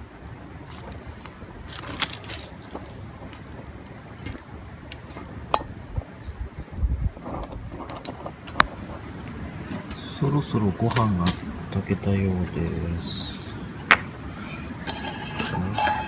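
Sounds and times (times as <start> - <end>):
metal cookware clinking: 14.9 - 16.0.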